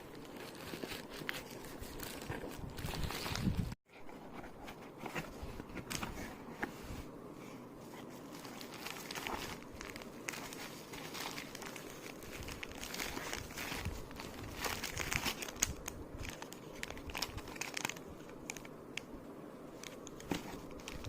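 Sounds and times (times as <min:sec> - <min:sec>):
packaging crinkling: 0:08.3 - 0:19.1, 0:19.8 - 0:21.0.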